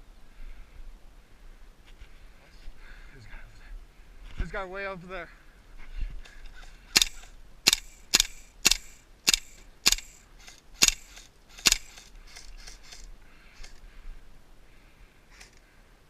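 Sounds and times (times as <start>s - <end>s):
airsoft rifle shots: 6.5s - 13.7s.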